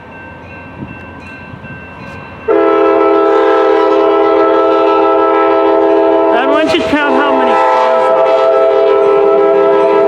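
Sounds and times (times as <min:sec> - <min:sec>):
train air horn chord: 0:02.5 - 0:10.0.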